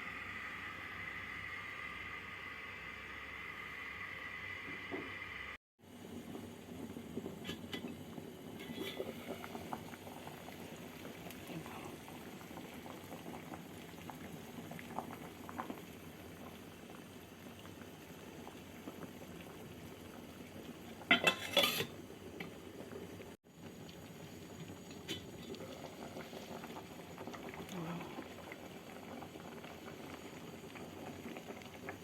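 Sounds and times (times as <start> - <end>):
soup boiling and bubbling: 0.0 - 32.0
utensil clattering on pot: 21.1 - 22.0.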